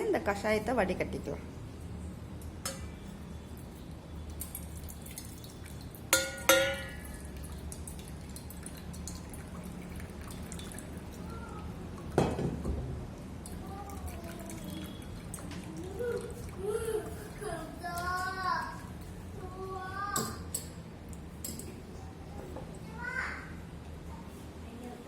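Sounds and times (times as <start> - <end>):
liquid pouring through strainer: 4.2 - 12.2, 13.4 - 18.1
utensils clinking: 6.1 - 7.1.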